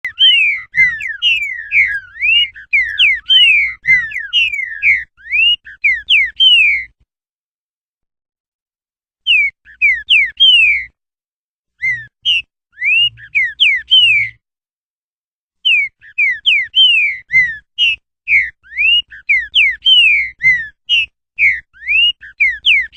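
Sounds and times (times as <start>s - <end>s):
bird singing whistled notes: 0.0s - 7.0s, 9.2s - 11.0s, 11.8s - 14.4s, 15.6s - 22.9s.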